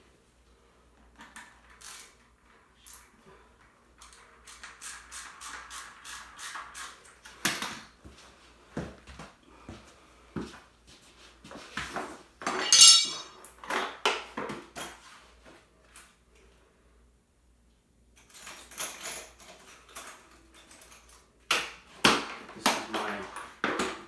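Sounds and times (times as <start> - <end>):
metal tools clinking and clattering: 12.5 - 13.3
ringing metal clank: 12.6 - 13.3.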